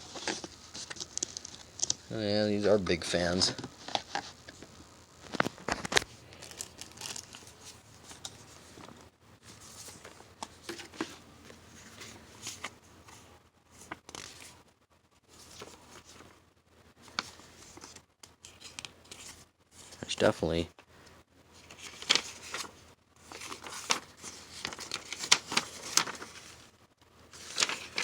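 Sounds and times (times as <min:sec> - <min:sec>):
packaging rustling and crinkling: 0:00.0 - 0:02.1, 0:05.2 - 0:14.6, 0:21.6 - 0:26.7, 0:27.3 - 0:28.0.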